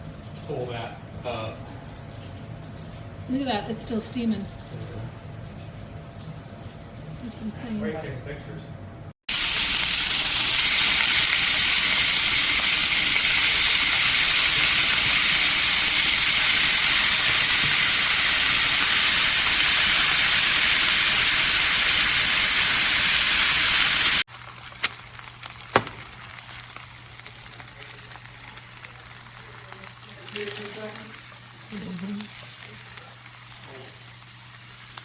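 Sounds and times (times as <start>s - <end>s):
food sizzling in a pan: 9.3s - 35.0s.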